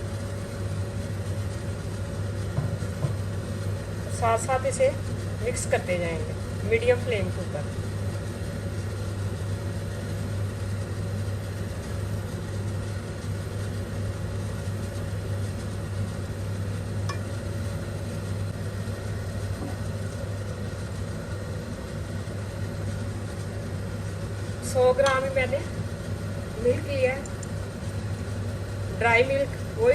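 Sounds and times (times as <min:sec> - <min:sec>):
kitchen equipment humming: 0:00.0 - 0:29.9.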